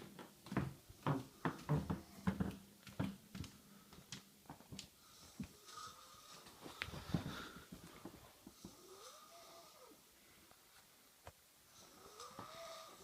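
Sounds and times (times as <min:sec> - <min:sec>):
woman snoring: 0:08.6 - 0:10.0, 0:11.8 - 0:13.0.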